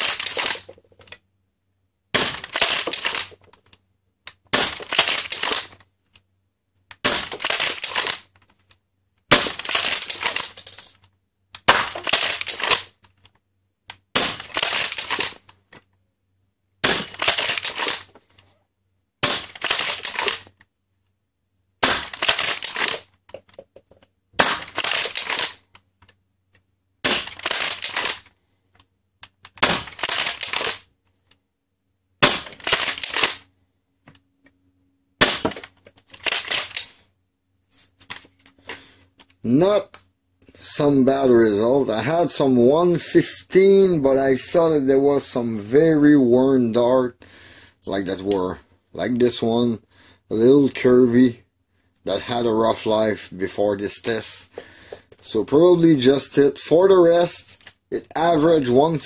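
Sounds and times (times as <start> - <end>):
dart blaster priming and firing: 0.0 - 0.9, 2.1 - 3.5, 4.3 - 5.8, 9.3 - 10.8, 11.6 - 13.0, 13.9 - 15.5, 16.8 - 18.2, 19.2 - 20.6, 21.8 - 23.6, 24.4 - 25.7, 27.0 - 28.3, 29.2 - 30.9, 32.2 - 33.5, 35.2 - 37.0.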